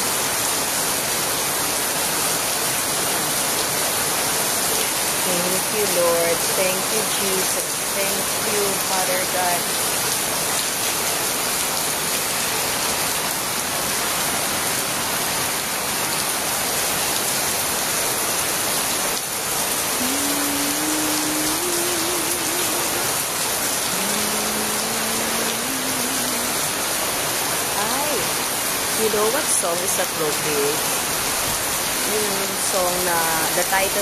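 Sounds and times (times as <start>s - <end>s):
heavy rain: 0.0s - 34.0s
person humming: 20.0s - 23.2s, 23.8s - 26.8s.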